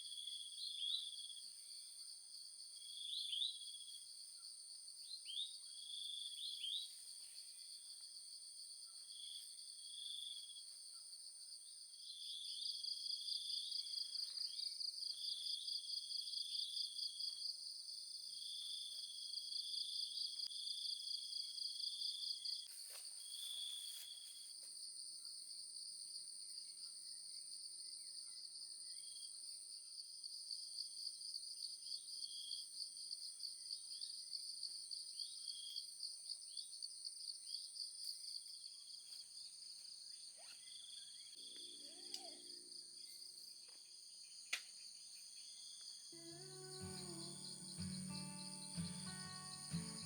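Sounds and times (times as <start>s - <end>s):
crickets trilling: 46.1s - 50.0s
lower call: 46.2s - 50.0s.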